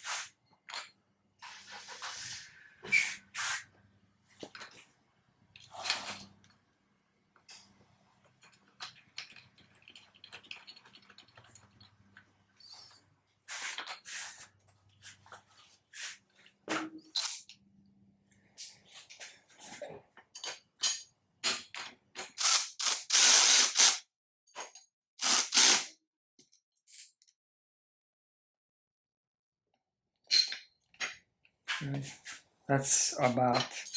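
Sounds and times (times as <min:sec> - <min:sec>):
ratchet wrench clicking: 0:22.4 - 0:24.0.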